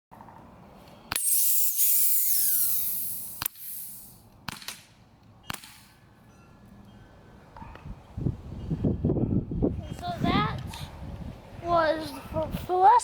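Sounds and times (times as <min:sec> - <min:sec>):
spray can hissing: 0:01.2 - 0:04.2
bb gun shots: 0:02.6 - 0:04.9, 0:05.5 - 0:05.9.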